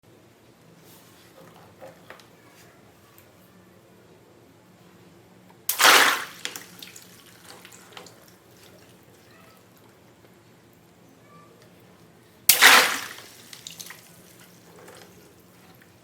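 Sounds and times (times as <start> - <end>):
water balloon bursting: 5.7 - 7.8, 12.5 - 14.4
water dripping: 5.7 - 10.0, 12.5 - 15.9.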